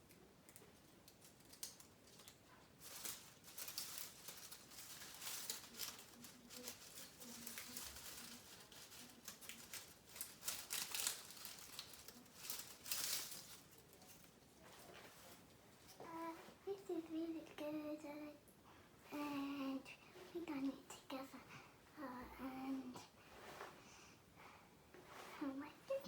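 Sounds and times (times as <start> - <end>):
foliage rustling and crackling: 0.5 - 18.2, 24.9 - 26.0.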